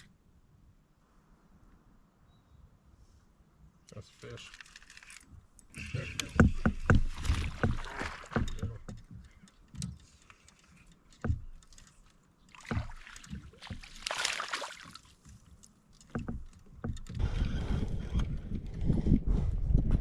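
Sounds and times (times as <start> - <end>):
knocks and bumps on a kayak: 5.8 - 10.2, 11.2 - 20.0.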